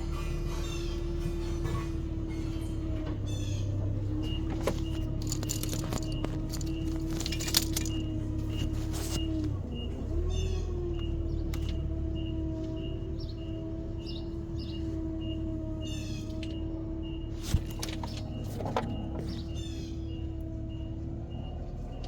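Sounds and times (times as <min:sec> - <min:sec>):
steady mechanical hum: 0:00.0 - 0:22.0
metal tools clinking: 0:04.3 - 0:09.2.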